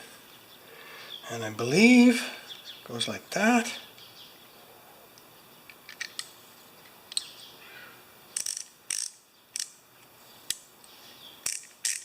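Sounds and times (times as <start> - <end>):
ratchet clicking: 8.4 - 9.8, 11.4 - 12.0.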